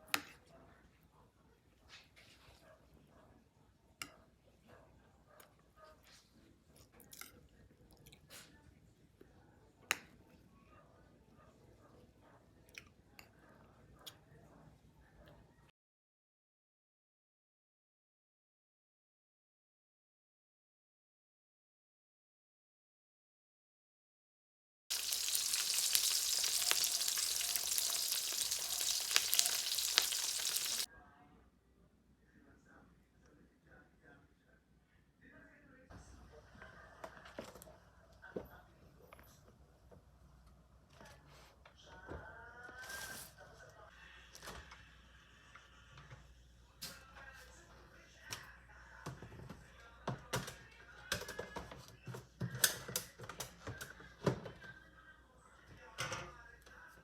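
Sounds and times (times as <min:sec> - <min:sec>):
food sizzling in a pan: 0:24.9 - 0:30.9.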